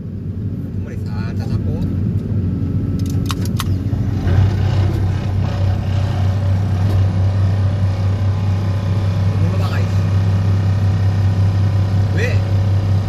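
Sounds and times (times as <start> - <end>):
vibratory pile hammer droning: 3.0 - 13.0.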